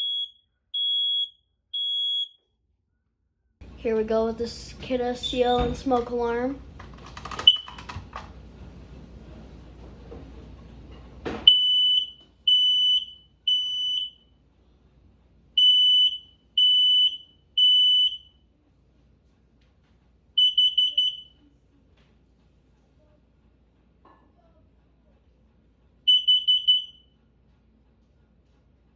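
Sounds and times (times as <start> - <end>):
smoke alarm beeping: 0.0 - 2.4, 7.4 - 7.8, 11.4 - 14.3, 15.6 - 18.4, 20.4 - 21.4, 26.1 - 27.1.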